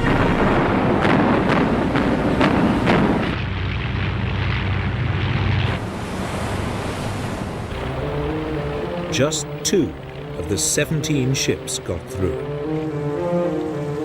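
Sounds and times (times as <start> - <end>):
sharp blasts: 0.0 - 5.9, 7.7 - 12.8
loud rush of noise: 0.0 - 12.8
steady low rumble: 0.0 - 13.4
sea and wind noise: 0.0 - 14.0.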